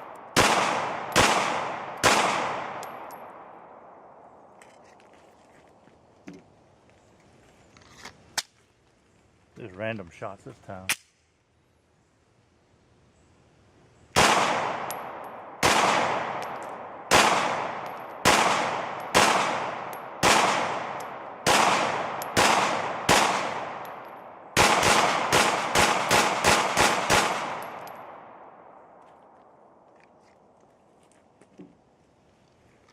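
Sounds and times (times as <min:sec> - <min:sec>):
pistol shots echoing: 0:00.0 - 0:04.0, 0:14.2 - 0:28.8.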